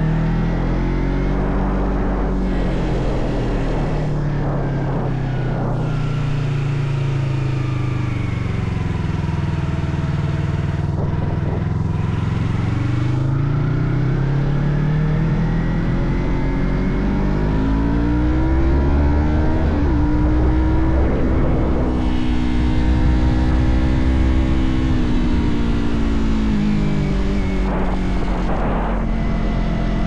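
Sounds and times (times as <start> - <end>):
motorcycle engine accelerating: 0.0 - 30.0.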